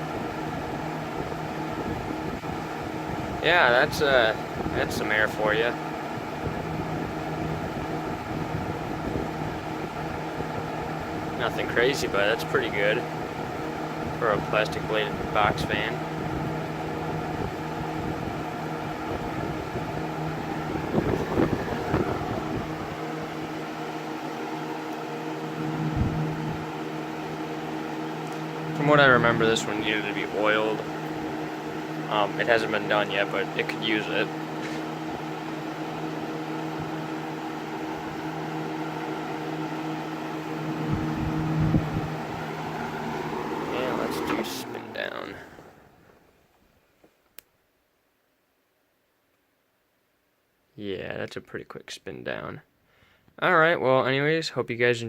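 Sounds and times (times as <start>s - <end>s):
low rumbles of air: 0.0s - 34.3s, 35.0s - 46.4s
box fan motor hum: 0.0s - 46.6s
rush of air: 20.5s - 23.6s.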